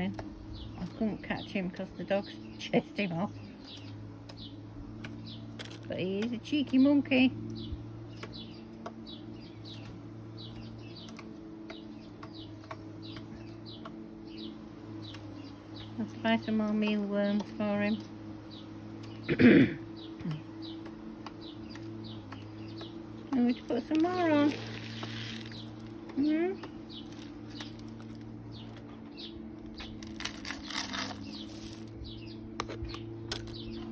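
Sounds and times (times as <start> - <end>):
small birds chirping: 0.0 - 33.9
steady low hum: 0.0 - 33.9
wings fluttering: 20.8 - 32.3.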